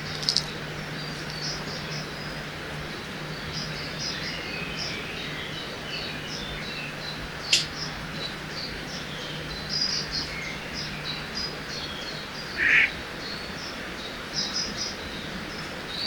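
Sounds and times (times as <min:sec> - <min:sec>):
birds chirping and trilling: 0:00.0 - 0:16.0
river water rushing: 0:00.0 - 0:16.0
harsh bird call: 0:12.4 - 0:13.0.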